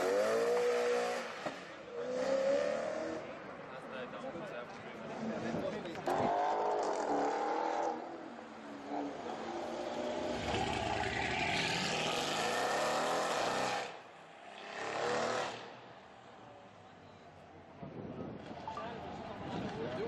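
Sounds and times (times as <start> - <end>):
car engine revving: 8.8 - 15.8.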